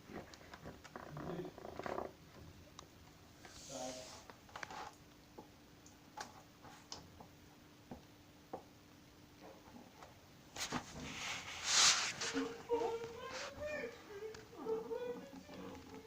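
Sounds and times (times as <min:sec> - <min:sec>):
loud rustling: 0:10.6 - 0:16.0.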